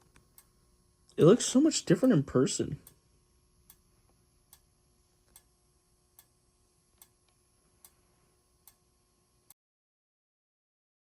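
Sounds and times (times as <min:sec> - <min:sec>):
fire alarm strobe ticking: 0:07.8 - 0:08.9.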